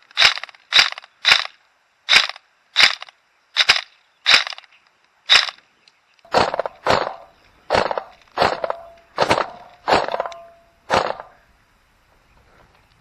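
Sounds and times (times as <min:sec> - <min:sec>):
airsoft gun shots: 0:06.3 - 0:11.4.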